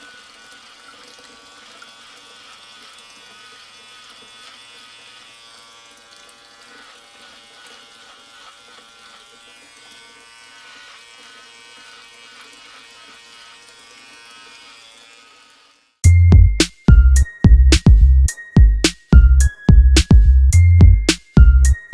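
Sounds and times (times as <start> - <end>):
small electric motor buzzing: 0.0 - 16.1
electronic music with heavy bass: 16.0 - 21.9.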